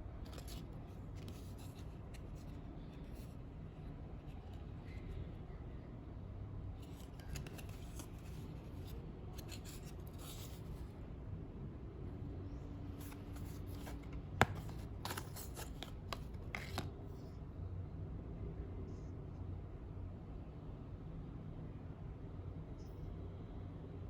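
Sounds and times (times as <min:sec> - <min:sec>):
packaging rustling and scraping: 0:06.8 - 0:10.9, 0:12.9 - 0:17.0.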